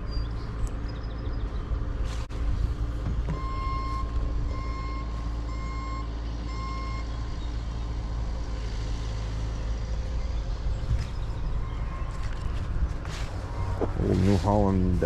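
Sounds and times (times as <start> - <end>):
vehicle backup alarm beeping: 3.3 - 7.6, 11.5 - 12.4, 13.5 - 14.2
low rumble: 9.7 - 15.0.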